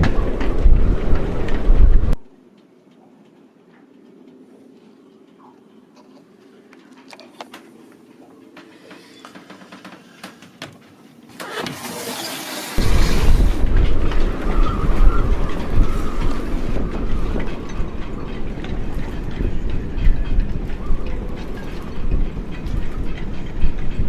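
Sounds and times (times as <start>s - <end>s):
wind buffeting microphone: 0.0s - 2.5s, 12.8s - 24.0s.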